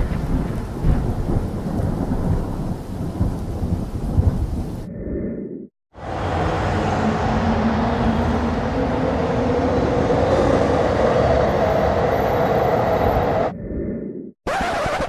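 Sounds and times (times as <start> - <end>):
train running on rails: 6.0 - 13.5.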